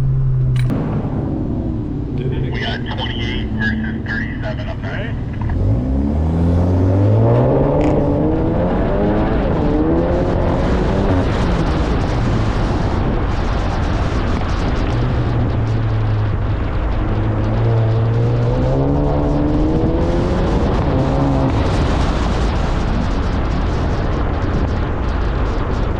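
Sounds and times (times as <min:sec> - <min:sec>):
car engine accelerating: 0:00.0 - 0:25.9
road and tyre noise: 0:00.0 - 0:25.9.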